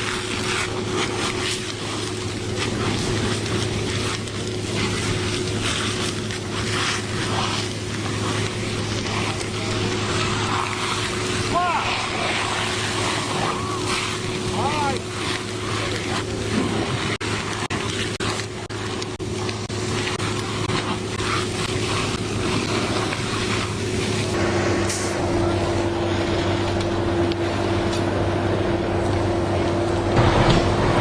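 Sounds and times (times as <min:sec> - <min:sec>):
large engine running: 0:00.0 - 0:31.0.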